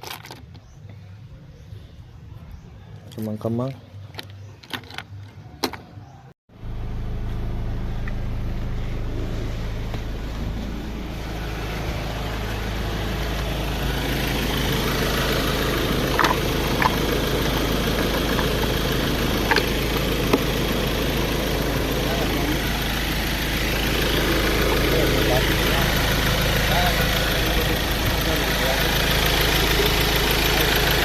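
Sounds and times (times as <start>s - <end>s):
car engine idling: 6.5s - 31.0s.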